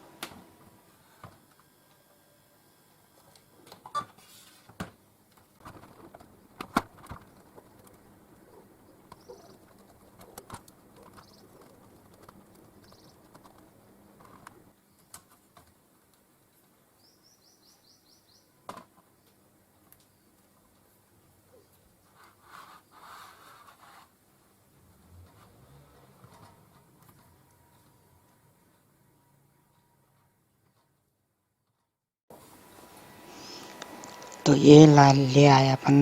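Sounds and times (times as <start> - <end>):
bird chirping: 8.5 - 9.7, 11.1 - 11.7, 12.8 - 13.2, 17.0 - 18.6.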